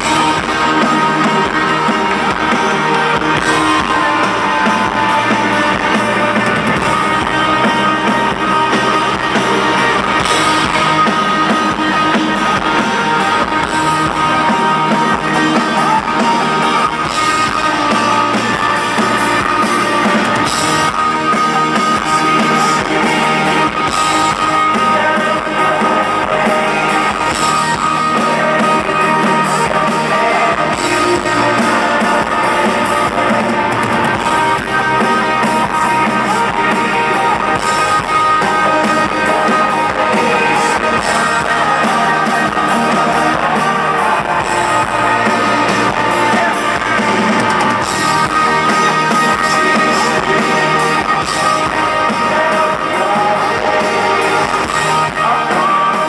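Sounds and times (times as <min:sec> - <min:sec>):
drum kit: 0:00.0 - 0:56.0
guitar strumming: 0:00.0 - 0:56.0.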